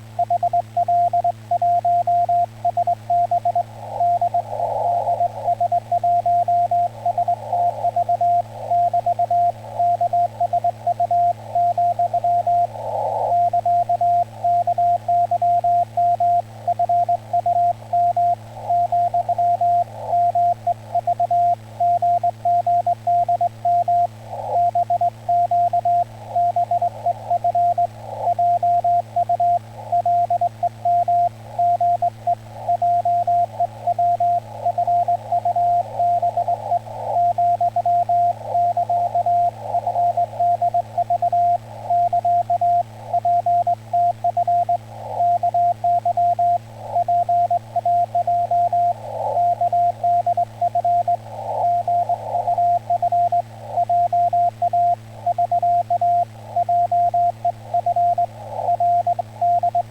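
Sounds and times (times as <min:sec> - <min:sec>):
low steady hum: 0:00.0 - 0:59.9
radio band noise hiss: 0:00.0 - 0:59.9
morse code beeps: 0:32.7 - 0:59.9.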